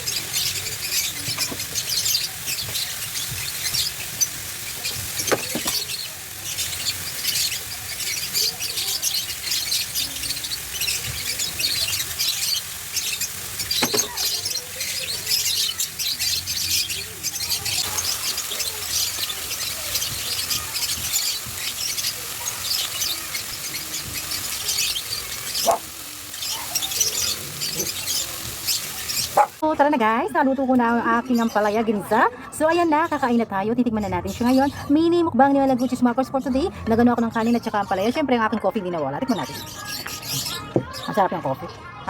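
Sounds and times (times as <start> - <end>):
oil sizzling in a pan: 0.0 - 29.7.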